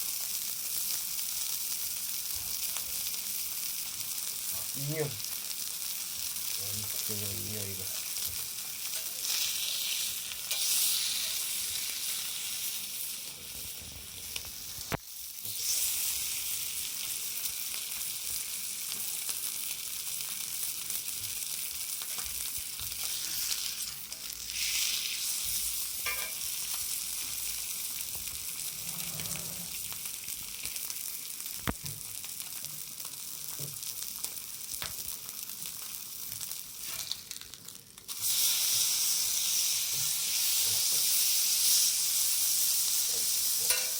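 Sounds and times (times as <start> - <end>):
steak sizzling on a griddle: 0.0 - 43.9.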